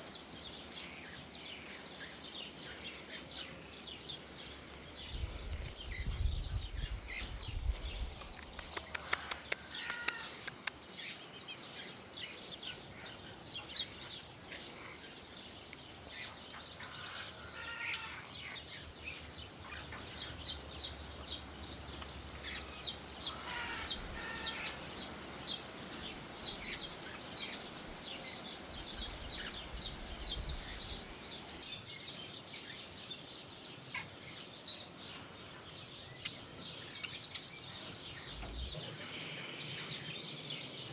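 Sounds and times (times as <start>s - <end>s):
birds chirping: 0.0s - 40.9s
harsh bird calls: 7.1s - 11.5s, 19.7s - 31.6s
sharp clicks: 8.2s - 10.8s.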